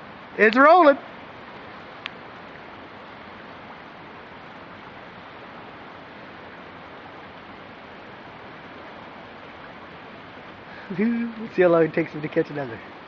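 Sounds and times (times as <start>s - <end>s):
river water rushing: 0.0s - 13.0s.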